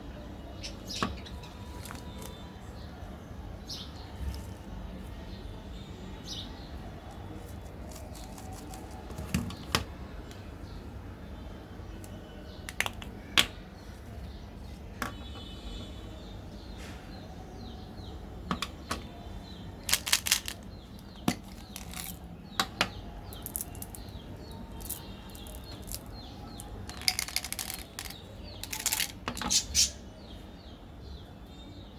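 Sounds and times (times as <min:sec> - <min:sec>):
clicks and crinkling rustles: 0:07.4 - 0:09.8, 0:19.8 - 0:22.2, 0:24.8 - 0:29.5
faint bird chirps: 0:28.4 - 0:30.5.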